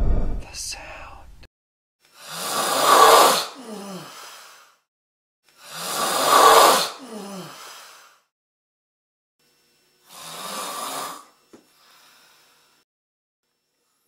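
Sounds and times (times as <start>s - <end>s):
person snoring loudly: 2.2s - 4.6s, 5.6s - 8.3s, 10.0s - 11.4s.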